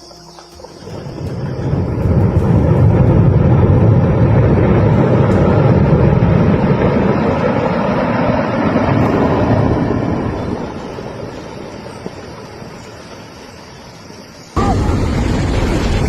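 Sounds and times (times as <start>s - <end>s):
loud steady rushing noise: 0.0s - 12.9s.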